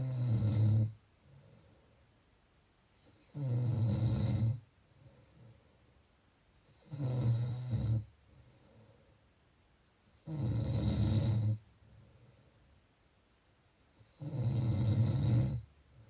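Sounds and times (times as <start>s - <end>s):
long low snores: 0.0s - 1.0s, 3.0s - 4.7s, 6.7s - 8.1s, 10.2s - 11.6s, 14.0s - 15.7s
faint breathing: 1.1s - 2.3s, 4.8s - 6.8s, 8.0s - 9.4s, 11.5s - 12.8s.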